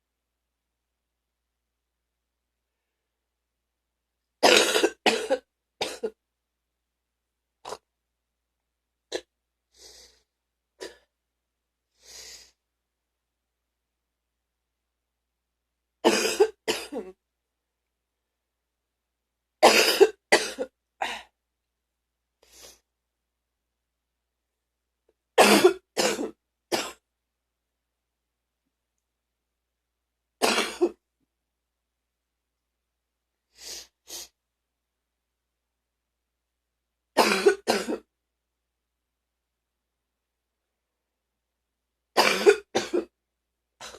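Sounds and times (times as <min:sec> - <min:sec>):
person coughing deeply: 0:04.4 - 0:06.2, 0:16.0 - 0:17.2, 0:19.6 - 0:20.7, 0:25.4 - 0:27.0, 0:30.4 - 0:31.0, 0:37.2 - 0:38.1, 0:42.2 - 0:43.1
breathy inhale: 0:09.7 - 0:10.3.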